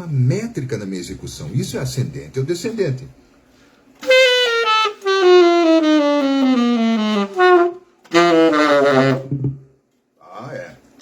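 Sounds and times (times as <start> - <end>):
saxophone descending scale: 4.0 - 9.3.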